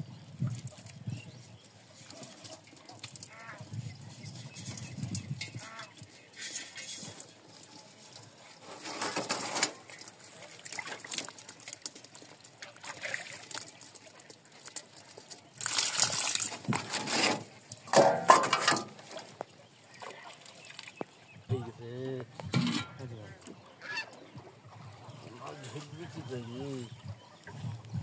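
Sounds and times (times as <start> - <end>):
river water sloshing and splashing: 0.4 - 21.5, 23.0 - 28.0.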